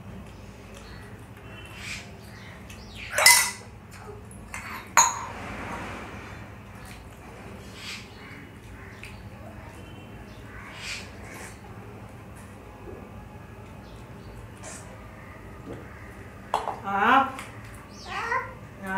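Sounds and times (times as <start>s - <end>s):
dishes clattering: 3.1s - 3.7s, 4.5s - 5.4s
ringing dish clink: 5.0s - 5.3s.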